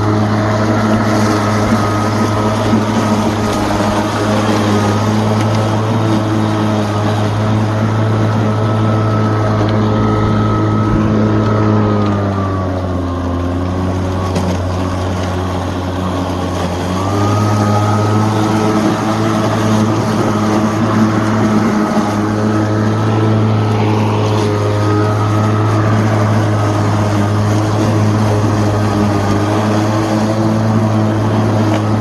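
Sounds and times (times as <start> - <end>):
lawn mower running: 0.0 - 32.0.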